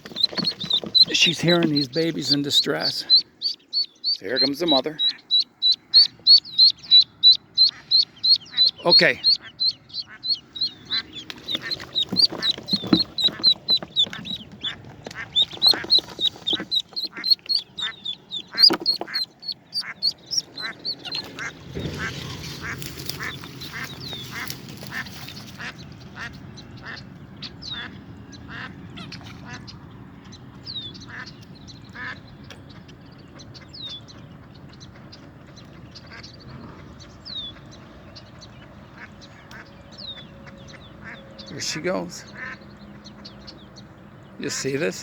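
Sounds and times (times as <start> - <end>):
ducklings peeping: 0.0 - 45.0
duck quacking: 0.4 - 29.8, 31.0 - 31.4, 39.0 - 43.5
wind or microphone handling noise: 10.5 - 26.3.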